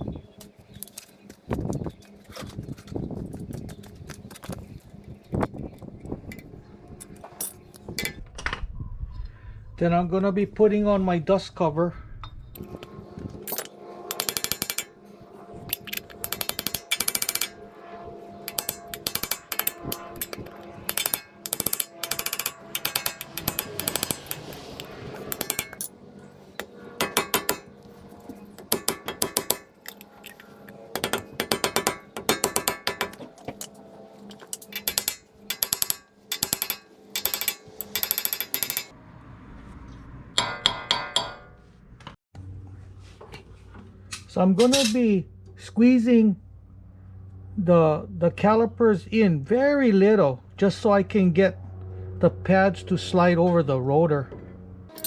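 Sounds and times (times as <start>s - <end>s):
hand ratchet clicking: 12.6s - 14.9s, 15.7s - 17.6s, 18.5s - 25.9s, 26.6s - 27.7s, 28.6s - 38.9s.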